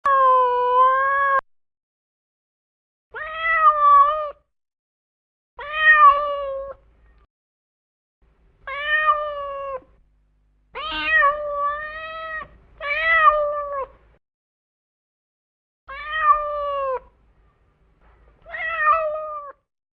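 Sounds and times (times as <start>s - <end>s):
cat meowing: 0.1s - 1.4s, 3.2s - 4.4s, 5.6s - 6.8s, 8.7s - 9.9s, 10.8s - 14.0s, 15.9s - 17.1s, 18.4s - 19.6s.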